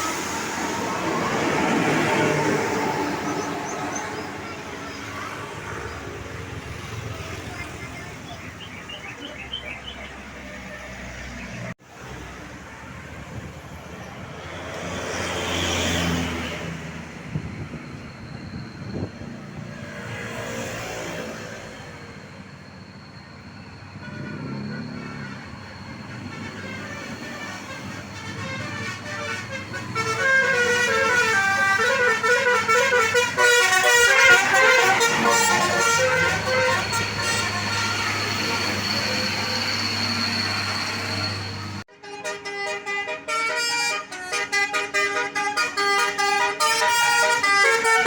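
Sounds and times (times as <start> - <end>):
multi-tone bus horn melody: 0.0 - 5.2, 24.0 - 48.0
vehicle passing by: 0.0 - 8.3, 14.2 - 22.0.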